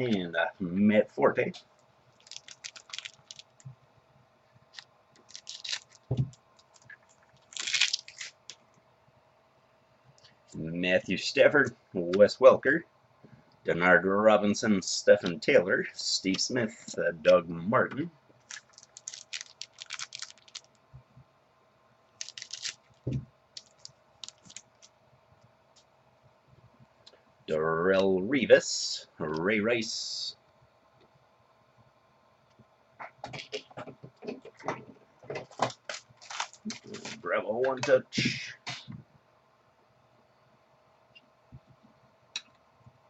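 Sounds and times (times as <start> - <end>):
trading cards being handled: 4.8 - 8.6, 22.2 - 23.0, 23.6 - 24.9
scraping rustle of packaging: 18.4 - 20.7, 22.2 - 23.0, 35.8 - 37.2.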